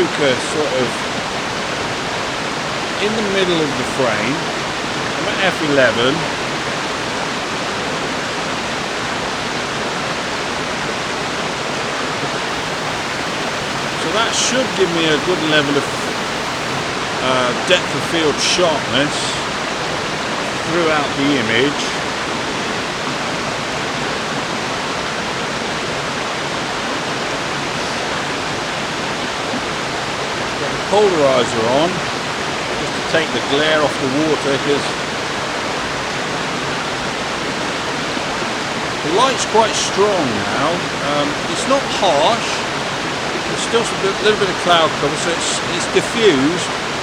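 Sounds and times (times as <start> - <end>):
river rushing over rocks: 12.5 - 16.9.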